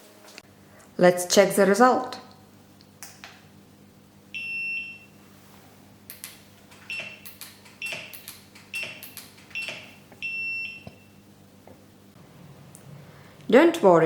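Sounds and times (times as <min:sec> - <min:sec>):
scooter buzzer beeping: 0:04.4 - 0:05.1, 0:08.7 - 0:09.0, 0:09.6 - 0:11.2
small clicks: 0:06.1 - 0:09.8.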